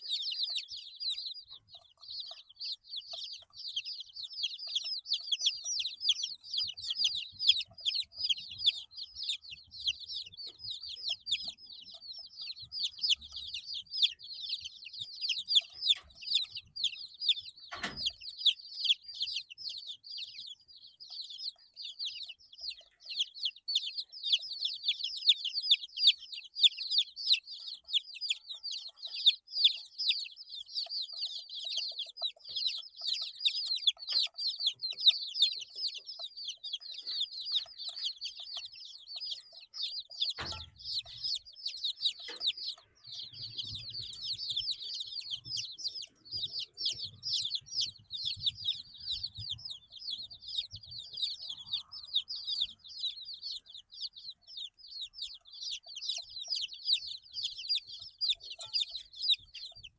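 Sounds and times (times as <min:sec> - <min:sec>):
chicks peeping: 0:00.0 - 0:59.9
sharp knock: 0:40.3 - 0:41.1.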